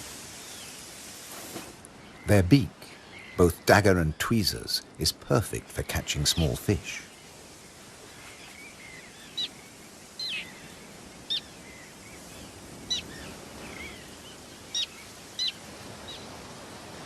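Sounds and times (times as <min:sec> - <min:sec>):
steady outdoor hiss: 0:00.0 - 0:17.0
terns calling harshly: 0:01.9 - 0:07.4.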